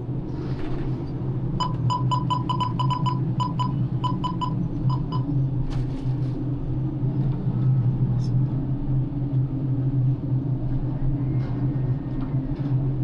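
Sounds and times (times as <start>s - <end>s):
crane engine low drone: 0.0s - 13.0s
high electronic beeps: 1.6s - 5.3s.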